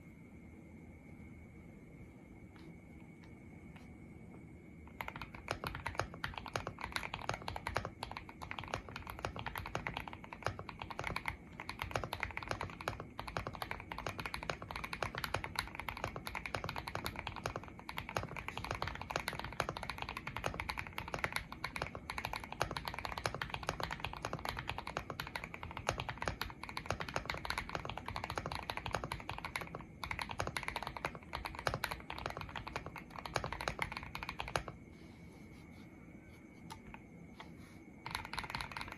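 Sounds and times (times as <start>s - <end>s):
fast typing on mechanical keyboard: 4.9s - 34.8s, 38.0s - 38.9s.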